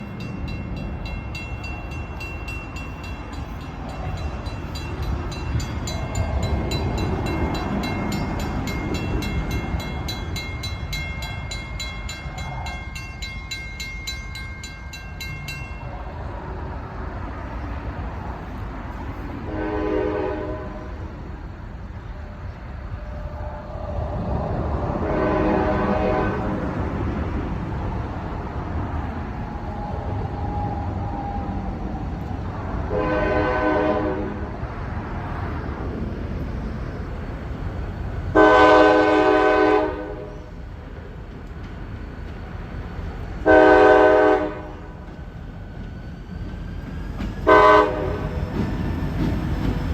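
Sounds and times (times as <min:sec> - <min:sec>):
diesel locomotive rumbling: 0:00.0 - 0:49.9
train horn: 0:19.4 - 0:21.1, 0:25.0 - 0:26.8, 0:32.9 - 0:34.6, 0:38.3 - 0:40.6, 0:43.4 - 0:45.0, 0:47.4 - 0:48.4.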